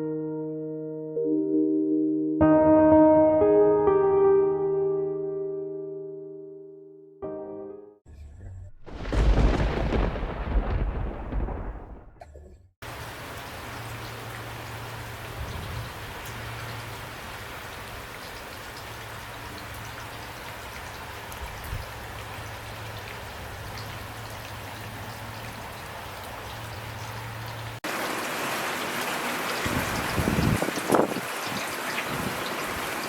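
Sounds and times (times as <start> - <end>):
deep rumble: 8.1 - 12.7
rain pattering: 8.9 - 12.2, 12.8 - 33.0.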